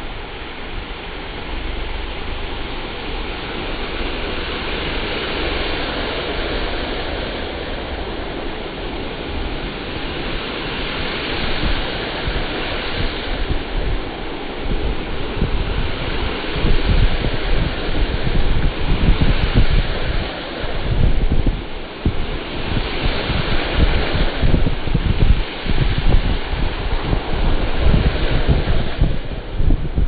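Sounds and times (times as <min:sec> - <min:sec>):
low rumble of traffic: 0:00.0 - 0:22.7
steady rain falling: 0:00.0 - 0:30.0.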